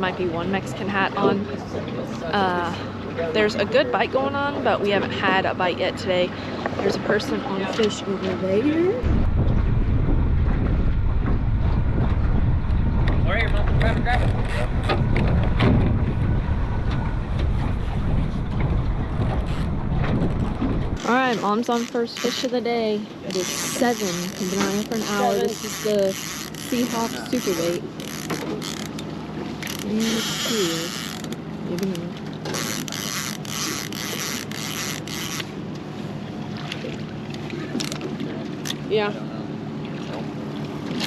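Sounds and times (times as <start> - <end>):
low rumble of boat and water: 0.0 - 41.0
wind buffeting the microphone: 8.7 - 21.7
fishing reel clicking and hissing: 23.3 - 29.0, 29.6 - 31.4, 32.5 - 35.5.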